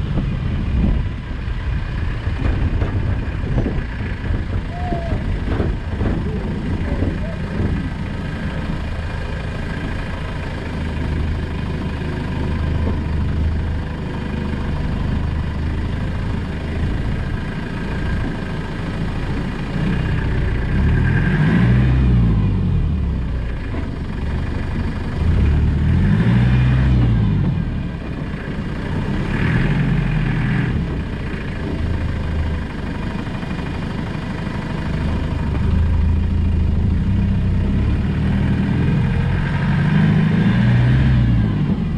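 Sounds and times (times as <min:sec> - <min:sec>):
diesel engine revving off-road: 0:00.0 - 0:41.9.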